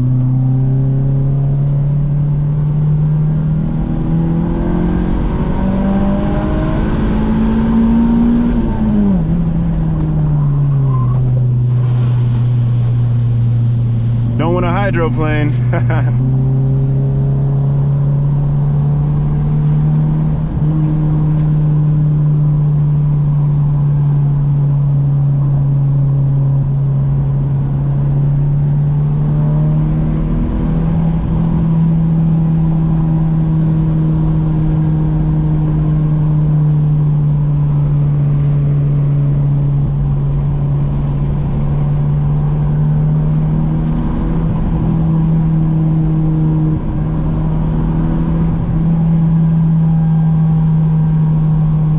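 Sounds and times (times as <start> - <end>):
car engine droning from inside: 0.0 - 51.9.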